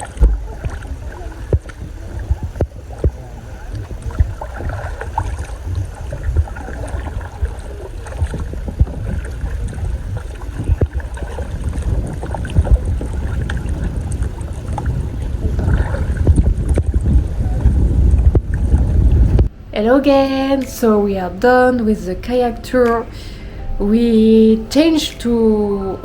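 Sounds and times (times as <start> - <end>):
kayak paddle splashes and knocks: 0.0 - 19.5
wind rumble on microphone: 0.0 - 20.2.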